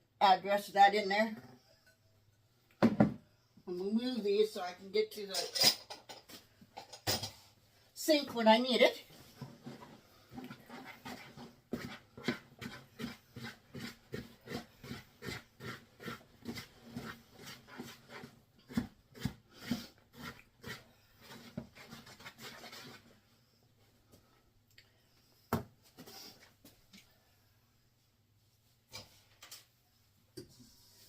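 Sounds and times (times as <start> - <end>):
dough whisk stirring wet dough: 9.0 - 23.2.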